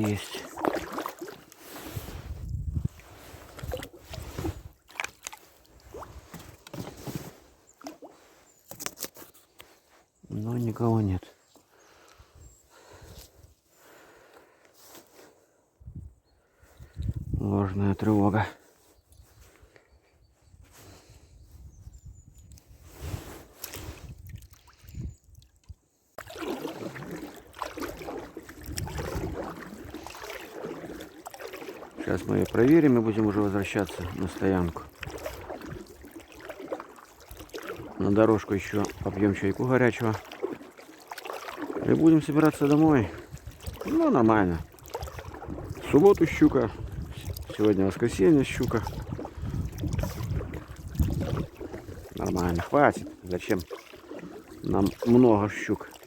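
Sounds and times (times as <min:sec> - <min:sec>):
water splashes: 0:00.0 - 0:08.9, 0:22.9 - 0:56.0.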